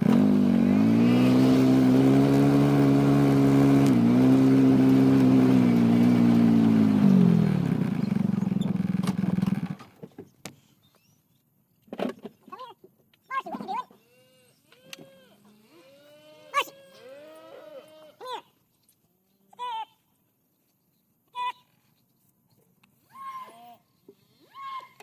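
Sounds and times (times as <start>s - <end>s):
vehicle engine revving: 0.0s - 9.8s.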